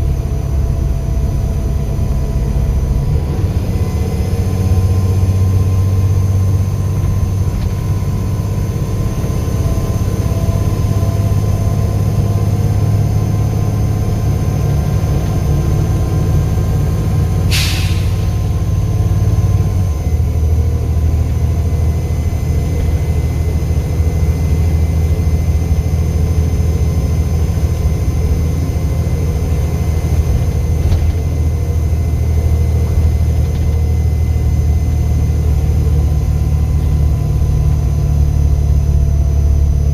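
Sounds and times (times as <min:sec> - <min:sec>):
bus engine running: 0:00.0 - 0:39.9
air hiss: 0:17.5 - 0:18.4.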